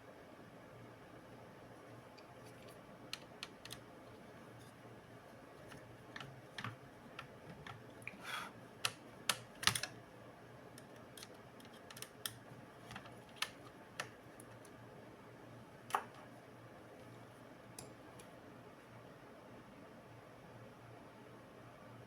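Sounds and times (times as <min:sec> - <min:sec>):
small hard parts clicking: 0:08.8 - 0:09.9.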